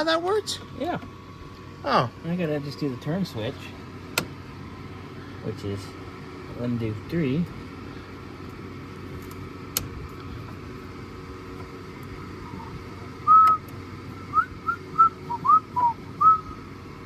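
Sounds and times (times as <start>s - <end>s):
steady low hum: 0.0s - 17.0s
person whistling: 13.3s - 13.6s, 14.3s - 16.6s.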